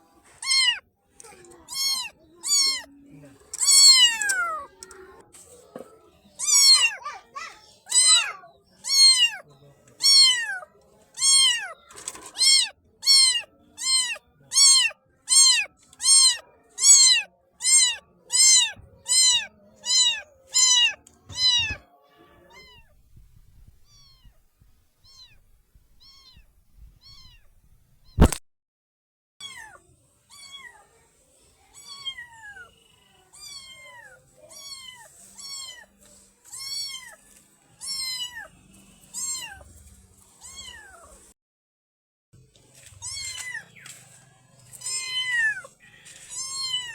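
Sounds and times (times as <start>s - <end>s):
kitten meowing: 0.4s - 2.9s, 3.6s - 4.9s, 6.4s - 7.0s, 7.9s - 9.4s, 10.0s - 10.6s, 11.2s - 21.8s, 22.4s - 24.4s, 25.0s - 28.4s, 44.8s - 45.7s, 46.3s - 46.9s
sharp click: 28.1s - 28.4s.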